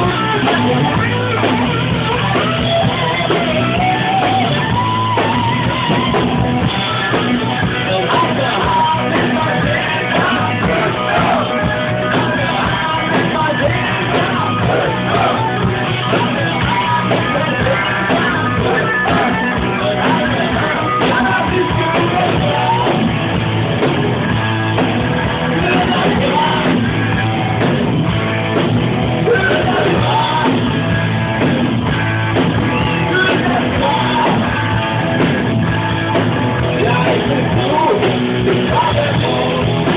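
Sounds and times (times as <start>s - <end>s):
electric guitar: 0.0s - 39.9s
low bass: 0.0s - 39.9s
sung and shouted vocals: 7.1s - 23.2s, 25.5s - 27.4s, 29.2s - 30.9s, 32.6s - 34.8s, 36.6s - 39.9s.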